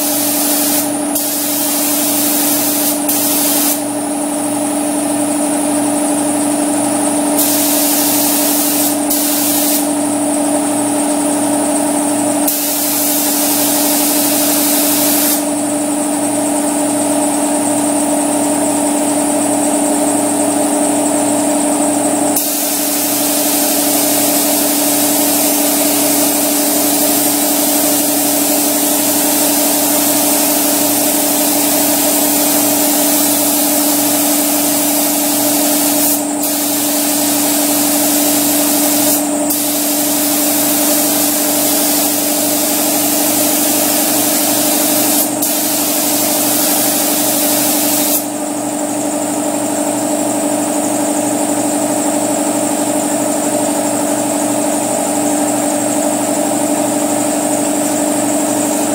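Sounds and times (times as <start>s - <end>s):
spray gun hissing: 0.0s - 3.9s, 7.4s - 10.0s, 12.5s - 15.5s, 22.4s - 48.3s.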